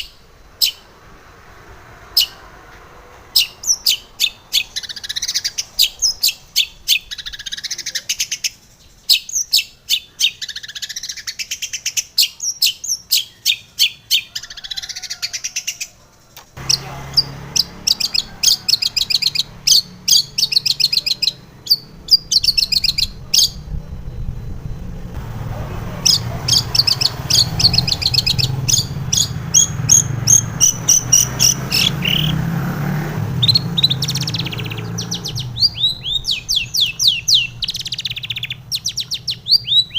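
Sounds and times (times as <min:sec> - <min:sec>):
bird chirping song: 0:00.0 - 0:00.9, 0:02.0 - 0:39.9
low steady hum: 0:20.7 - 0:26.4.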